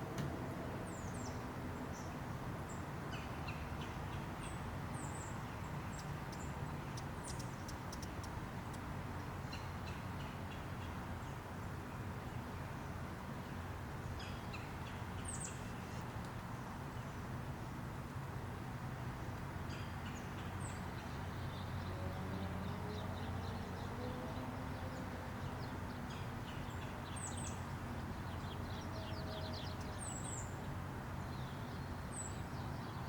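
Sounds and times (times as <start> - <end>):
hummingbirds chipping: 3.2 - 8.9, 19.7 - 33.0.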